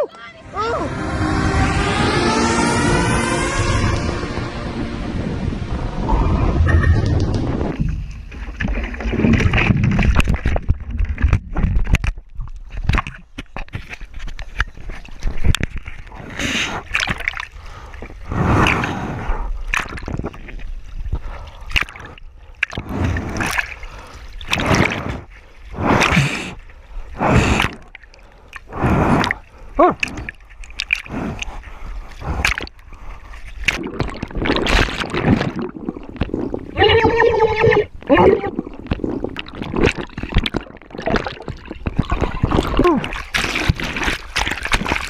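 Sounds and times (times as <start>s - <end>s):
water splashing and sloshing: 5.7s - 45.0s.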